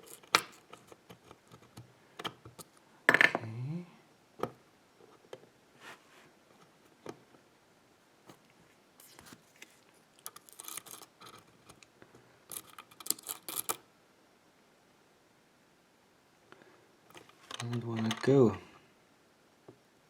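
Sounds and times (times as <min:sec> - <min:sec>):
metal lock clicks and scrapes: 0:00.0 - 0:00.9, 0:10.3 - 0:11.8, 0:12.5 - 0:13.8.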